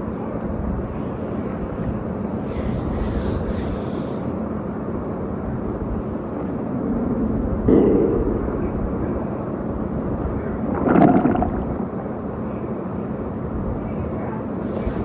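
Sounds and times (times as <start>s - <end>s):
cartoon stomach growl: 7.7s - 9.1s, 10.6s - 12.0s.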